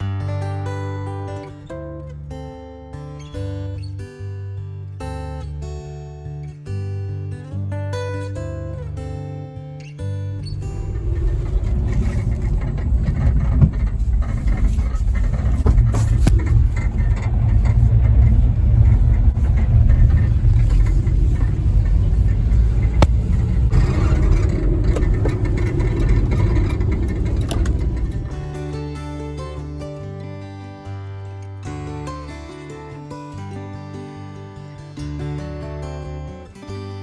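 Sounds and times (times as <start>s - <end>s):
small truck engine driving: 10.4s - 29.1s
road rumble: 10.4s - 29.2s.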